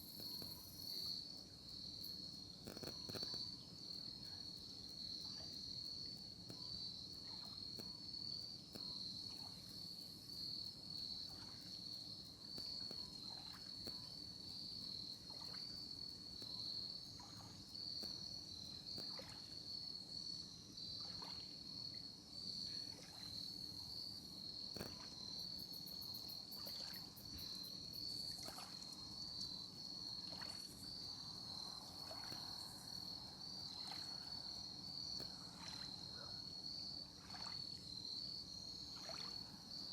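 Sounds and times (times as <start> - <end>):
faint ticks: 0.0 - 19.9, 24.6 - 36.3
crickets chirping: 0.0 - 39.9.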